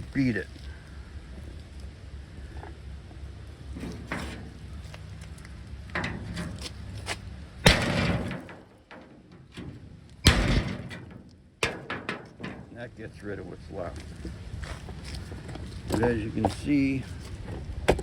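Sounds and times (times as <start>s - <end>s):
metal handling knocks: 3.8s - 5.0s, 5.8s - 6.8s, 7.7s - 12.8s.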